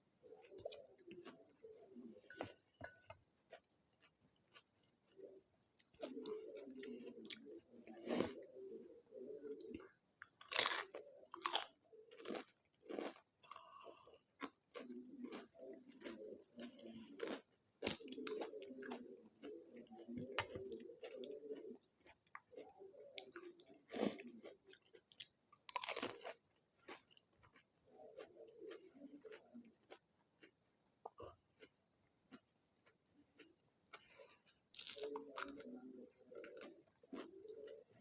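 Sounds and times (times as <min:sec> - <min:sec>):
chewing: 0:00.2 - 0:38.0
crisp food crunching: 0:09.7 - 0:30.6, 0:31.6 - 0:37.8.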